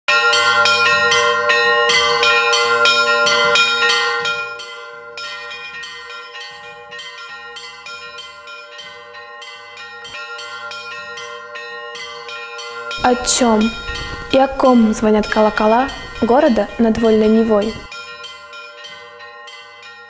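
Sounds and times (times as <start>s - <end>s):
church bells ringing: 0.1s - 20.0s
lingering hum of large bells: 0.1s - 20.0s.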